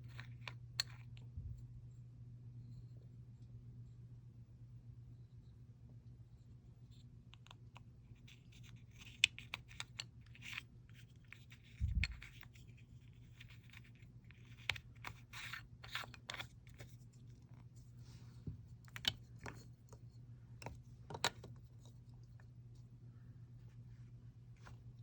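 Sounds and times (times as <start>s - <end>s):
small jars clicking and scraping: 0.0s - 1.2s, 7.4s - 17.7s, 18.8s - 22.5s.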